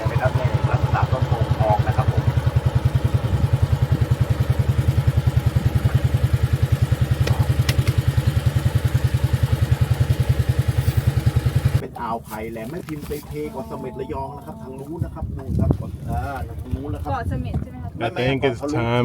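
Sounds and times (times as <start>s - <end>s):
small boat engine running: 0.0s - 12.0s.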